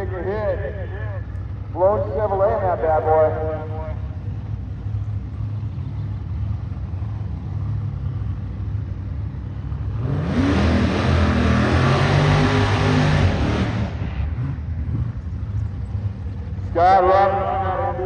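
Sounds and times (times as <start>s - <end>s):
drag car engine revving: 1.6s - 18.0s.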